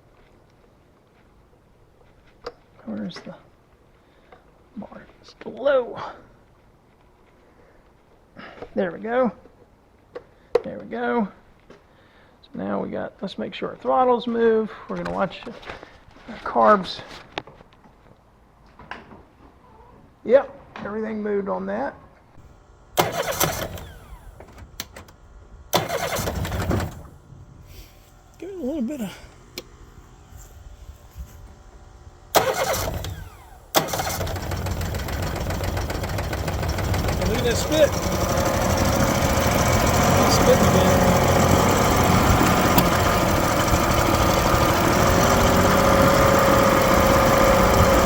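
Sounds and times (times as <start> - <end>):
outboard motor cranking over: 22.9 - 27.8, 32.2 - 48.0.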